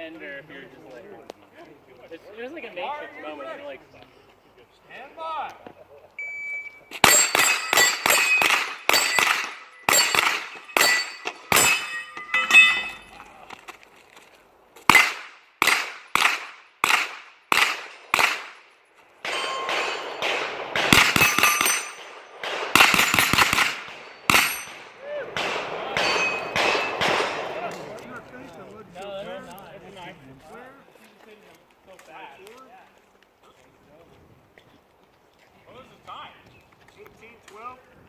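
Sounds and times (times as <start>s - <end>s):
steel targets ringing: 6.9s - 13.4s, 19.2s - 27.6s
carbine gunshots: 7.0s - 13.1s, 14.9s - 28.2s.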